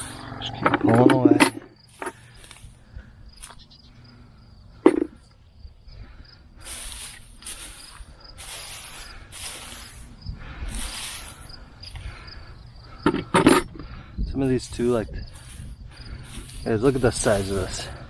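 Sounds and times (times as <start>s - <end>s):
hay rustling pulled by hand: 0.0s - 0.4s, 6.6s - 12.0s, 14.5s - 18.0s
insects chirping: 0.0s - 18.0s.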